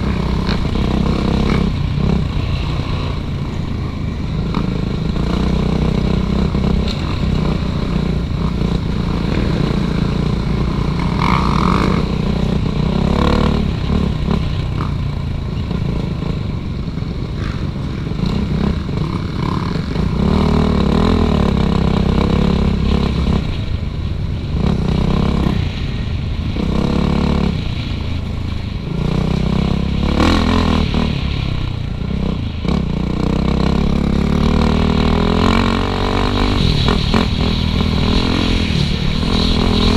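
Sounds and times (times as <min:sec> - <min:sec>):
motocross bike engine revving: 0:00.0 - 0:03.4, 0:04.4 - 0:15.0, 0:17.3 - 0:23.5, 0:28.9 - 0:39.9.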